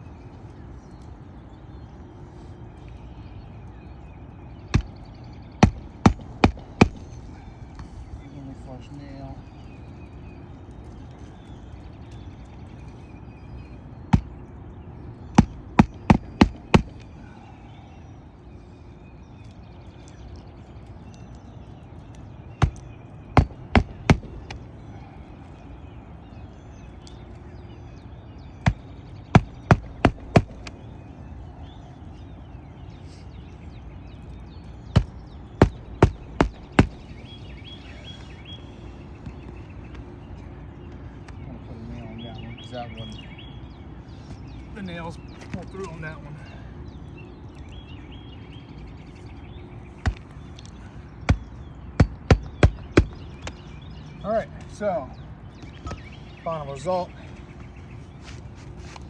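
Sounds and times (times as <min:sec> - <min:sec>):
hammer striking roofing nails: 0:04.8 - 0:05.0, 0:05.6 - 0:07.4, 0:14.1 - 0:14.4, 0:15.4 - 0:17.2, 0:22.6 - 0:22.8, 0:23.4 - 0:24.7, 0:28.7 - 0:30.8, 0:34.9 - 0:37.3, 0:50.0 - 0:50.3, 0:51.3 - 0:53.6.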